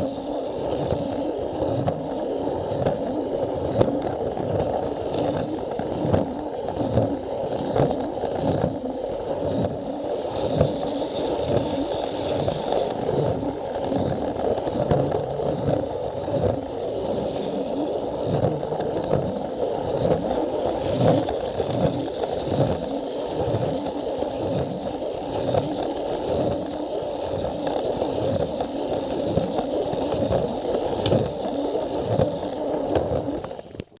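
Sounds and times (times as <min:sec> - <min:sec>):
toy train motor whirring and rattling: 0:08.2 - 0:33.9.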